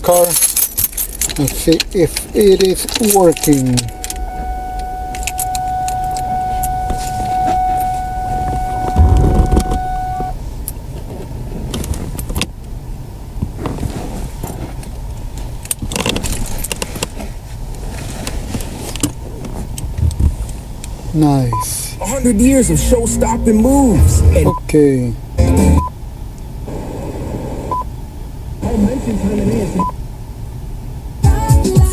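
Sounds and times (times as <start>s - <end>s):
car keys jangling: 0.0s - 10.8s, 15.4s - 17.2s
scattered clicks: 1.3s - 4.2s
electronic warning tone: 3.0s - 10.3s, 21.6s - 24.7s, 25.4s - 25.9s
low thud: 8.9s - 9.8s.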